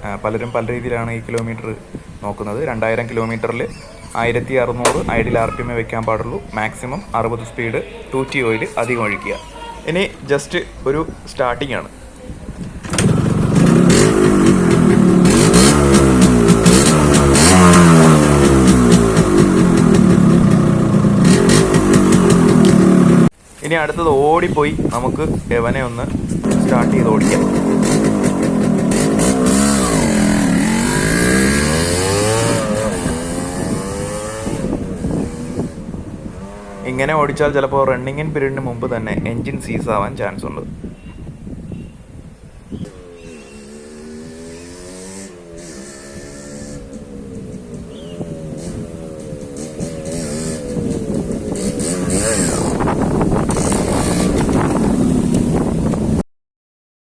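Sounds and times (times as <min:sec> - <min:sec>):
two-stroke motorcycle accelerating: 0:12.8 - 0:23.3, 0:26.4 - 0:37.2, 0:42.8 - 0:56.2.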